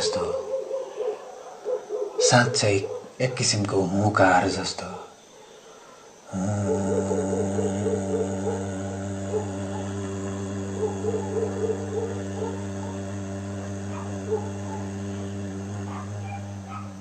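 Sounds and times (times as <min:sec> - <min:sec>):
man's deep throat drone: 0:06.3 - 0:17.0.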